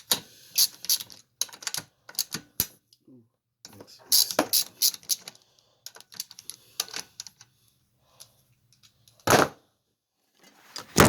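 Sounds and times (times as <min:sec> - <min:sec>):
hand tools and metal parts tapping: 0:00.0 - 0:02.8.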